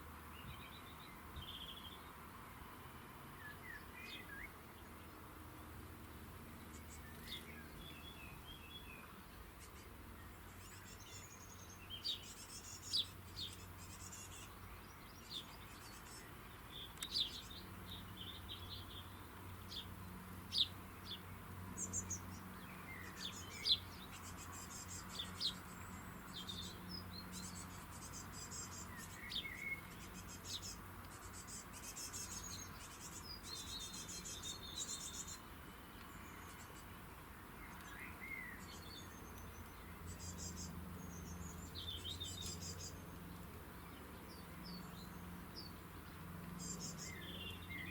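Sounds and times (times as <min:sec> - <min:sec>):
small songbirds chirping: 0:00.0 - 0:47.9.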